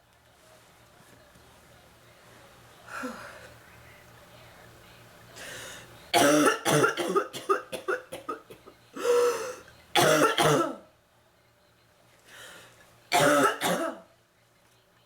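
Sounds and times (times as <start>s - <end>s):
woman speaking: 0.4s - 6.4s
woman coughing: 6.1s - 10.8s, 13.1s - 14.1s.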